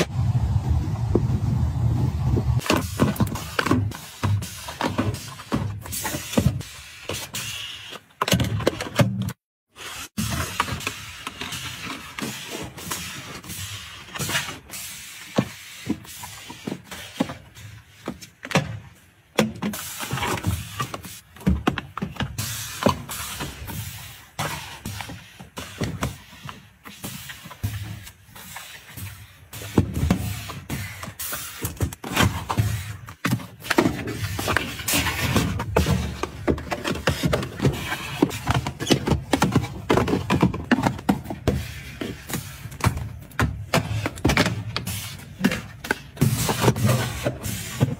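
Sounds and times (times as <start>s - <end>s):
hard items knocking and clicking: 16.7s - 23.5s, 29.6s - 47.9s.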